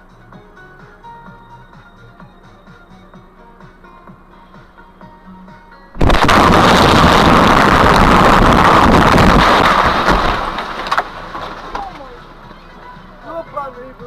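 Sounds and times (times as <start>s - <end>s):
explosion blast: 6.0s - 11.3s.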